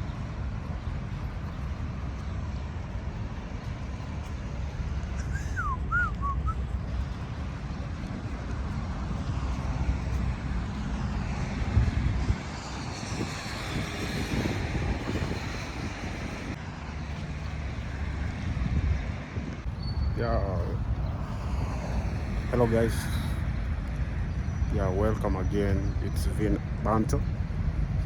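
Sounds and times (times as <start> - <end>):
low outdoor rumble: 0.0 - 28.0
short whistled notes: 5.3 - 6.6.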